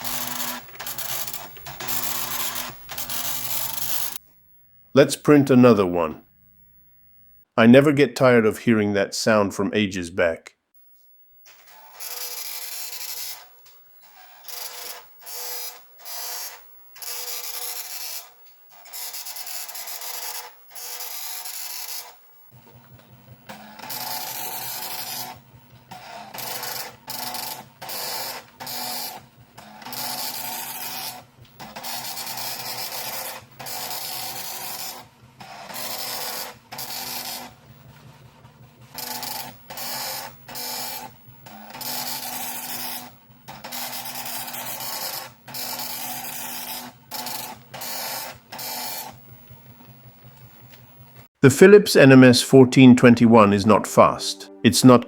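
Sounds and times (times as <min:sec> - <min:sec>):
dot matrix printer chattering: 0:00.0 - 0:04.2, 0:11.5 - 0:22.1, 0:23.2 - 0:37.7, 0:38.6 - 0:49.7.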